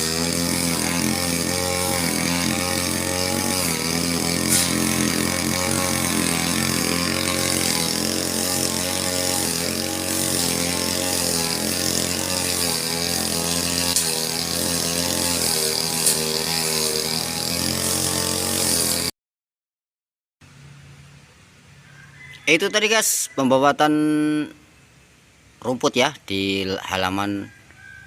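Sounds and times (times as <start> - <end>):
brush cutter engine: 0.0 - 19.1.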